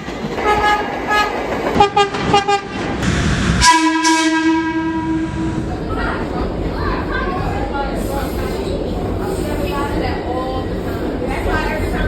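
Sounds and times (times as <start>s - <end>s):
train horn: 0.4s - 2.8s, 3.6s - 5.6s
rush of noise: 2.9s - 6.9s.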